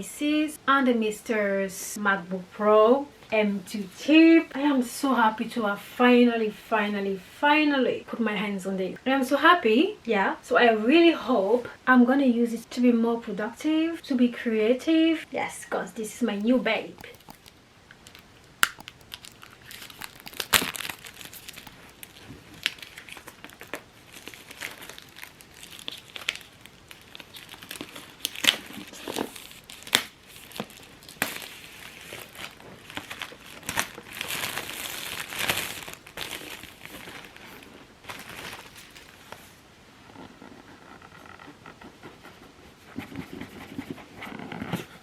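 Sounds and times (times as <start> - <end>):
plastic packaging crinkling and tearing: 16.8 - 39.6
box clicks and taps: 16.9 - 19.4.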